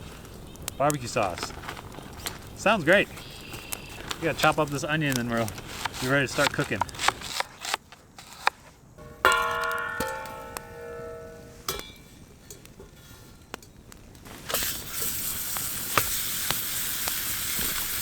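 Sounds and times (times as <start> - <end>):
sharp knocks: 9.0 - 11.9
metallic ring: 9.0 - 12.7
food sizzling in a pan: 14.3 - 18.0.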